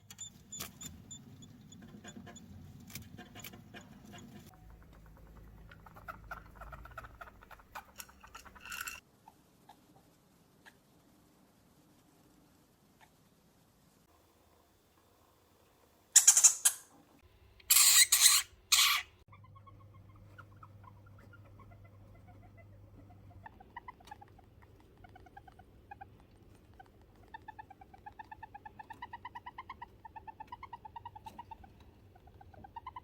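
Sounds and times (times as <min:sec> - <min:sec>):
hamster pulsed squeaks: 0:00.0 - 0:09.0, 0:16.2 - 0:16.9, 0:17.7 - 0:33.0
hamster harsh rasping bursts: 0:17.7 - 0:19.1.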